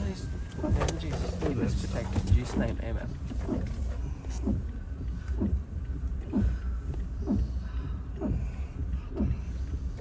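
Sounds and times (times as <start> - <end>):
windshield wipers squeaking: 0.0 - 7.6
car engine rumble: 0.0 - 10.0.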